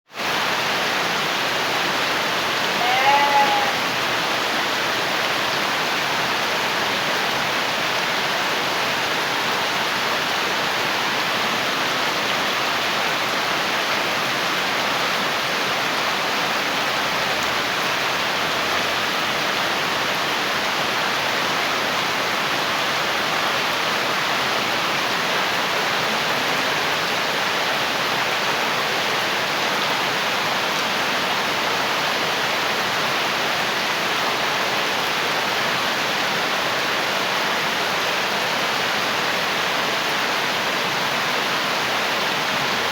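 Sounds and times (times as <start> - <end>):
heavy rain: 0.1 - 42.9
goat bleat: 2.8 - 3.9.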